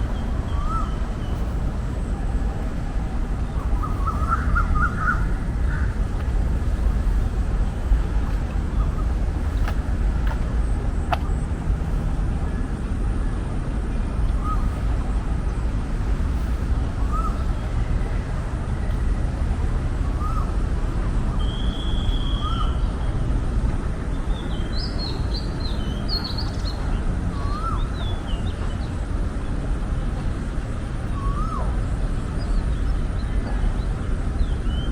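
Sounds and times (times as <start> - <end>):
birds calling: 0.0 - 2.7, 3.4 - 13.3, 14.3 - 18.4, 20.1 - 20.6, 24.2 - 29.6
steady low rumble: 0.0 - 34.9.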